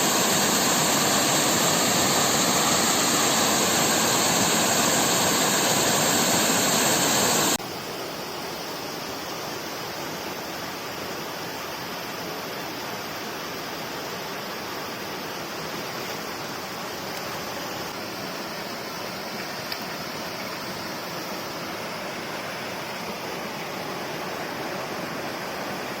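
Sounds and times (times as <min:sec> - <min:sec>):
waterfall rushing: 0:00.0 - 0:07.6, 0:22.2 - 0:26.0.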